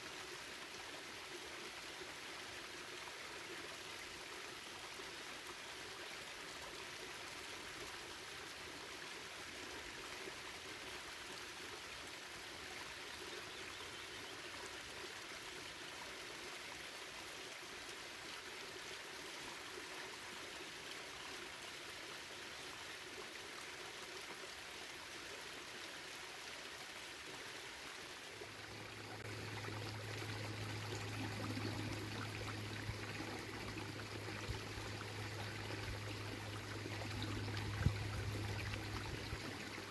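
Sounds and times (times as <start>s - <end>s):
low steady rumble: 28.6s - 39.9s.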